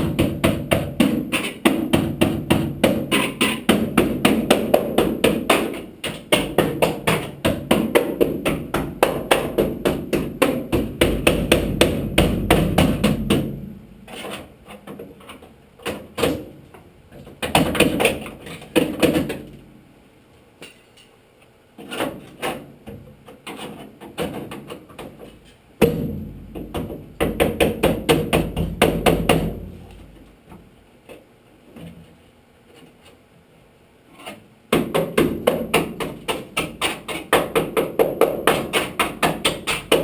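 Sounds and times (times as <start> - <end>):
rapid hammering: 0.0 - 15.0, 17.2 - 19.5, 25.8 - 29.7, 34.7 - 40.0.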